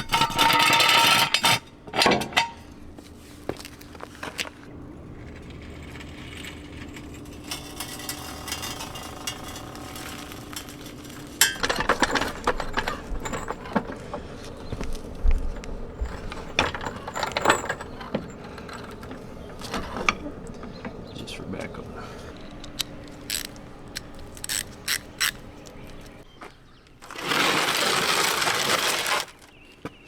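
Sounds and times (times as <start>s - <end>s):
metal clanks and knocks: 0.0s - 2.8s, 4.7s - 26.2s
ratchet wrench clicking: 22.7s - 26.1s.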